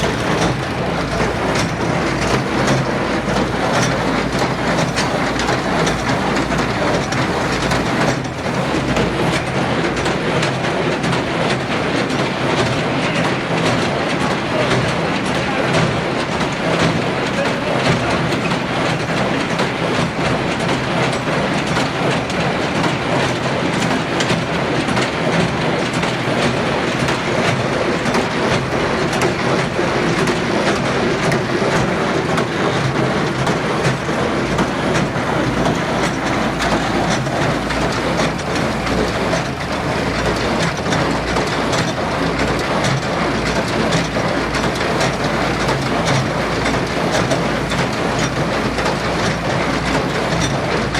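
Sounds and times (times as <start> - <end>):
baler mechanism clattering: 26.0 - 50.9.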